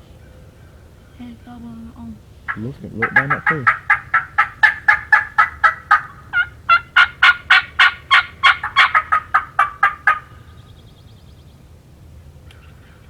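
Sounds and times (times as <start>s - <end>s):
turkey yelps: 2.5s - 10.6s.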